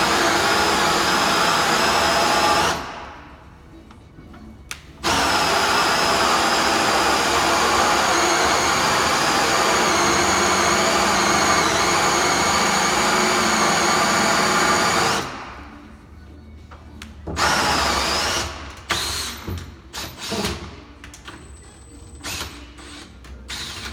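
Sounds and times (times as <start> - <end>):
power drill whining: 0.0 - 3.1, 5.0 - 15.4.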